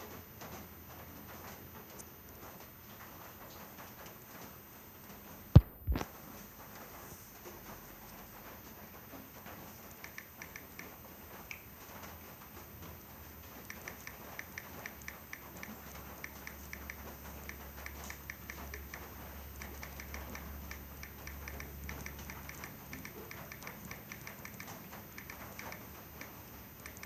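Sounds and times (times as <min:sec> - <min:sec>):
keyboard key-press clicks: 0:10.0 - 0:10.9, 0:19.6 - 0:26.3.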